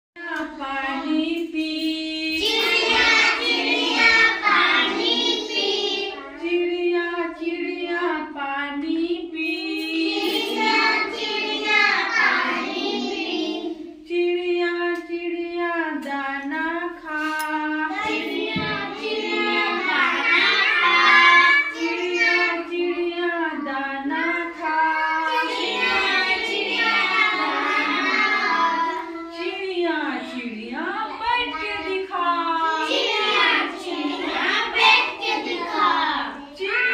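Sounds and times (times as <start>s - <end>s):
child singing: 0.4s - 6.6s, 9.3s - 14.0s, 16.7s - 23.6s, 24.2s - 29.4s, 32.6s - 36.9s.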